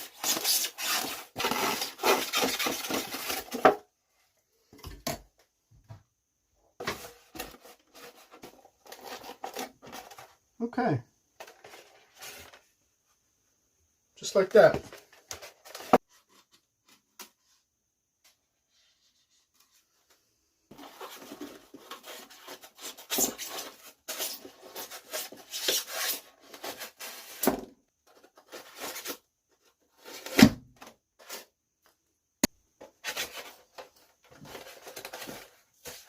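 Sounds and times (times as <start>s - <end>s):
scratchy rubbing on styrofoam: 0.0s - 3.3s, 20.7s - 27.3s.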